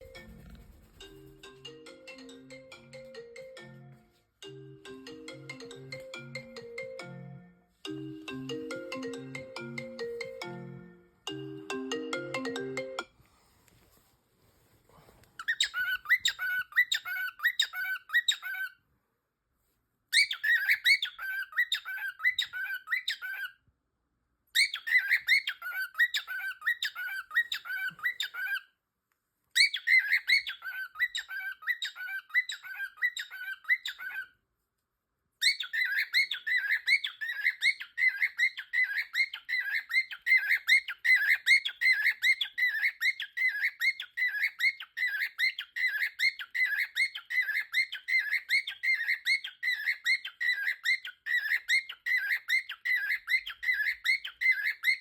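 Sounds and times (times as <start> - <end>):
parrot squawking: 15.4 - 18.8, 20.1 - 23.6, 24.6 - 28.8, 29.6 - 34.4, 35.4 - 55.0.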